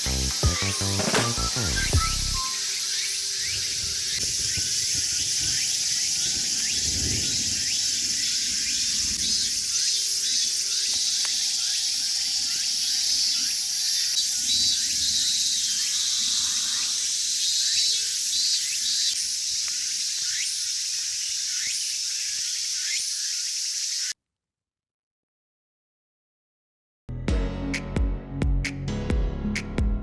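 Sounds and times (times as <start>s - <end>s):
short rising chirps: 0.0s - 3.8s
insects shrill drone: 0.0s - 24.2s.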